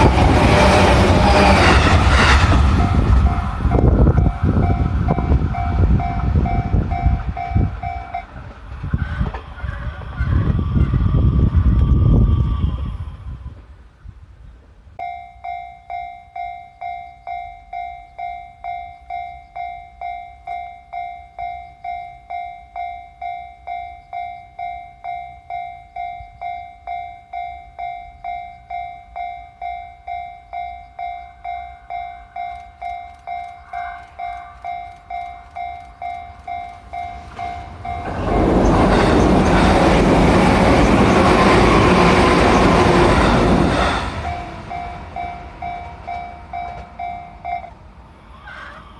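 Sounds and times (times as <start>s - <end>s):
electric train passing: 0.0s - 48.9s
level crossing warning bell: 2.7s - 8.4s, 15.0s - 47.9s.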